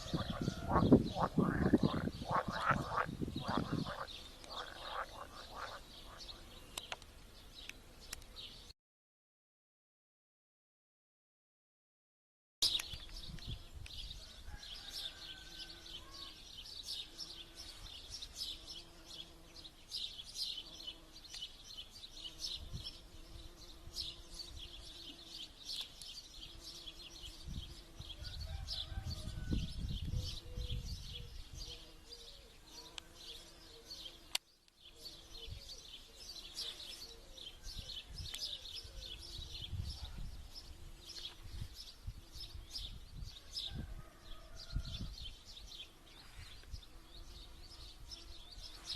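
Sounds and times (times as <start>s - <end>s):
wind rumble on microphone: 0.0s - 4.2s, 13.0s - 14.6s, 22.6s - 23.0s, 27.4s - 31.8s, 37.6s - 45.4s
frogs calling: 0.0s - 6.4s
birds singing and chirping: 0.0s - 8.7s, 12.6s - 48.9s.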